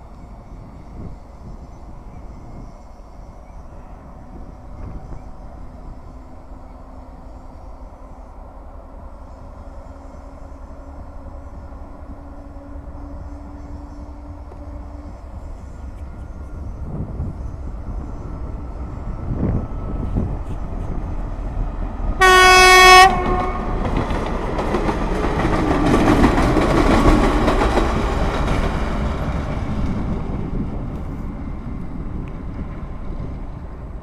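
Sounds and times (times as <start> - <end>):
train running noise: 0.0 - 34.0
locomotive horn blast: 22.2 - 23.8.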